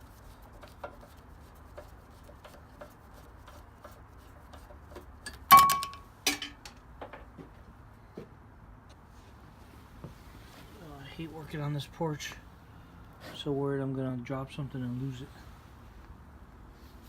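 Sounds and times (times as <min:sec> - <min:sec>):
metal clank with ringing: 0:05.5 - 0:06.6.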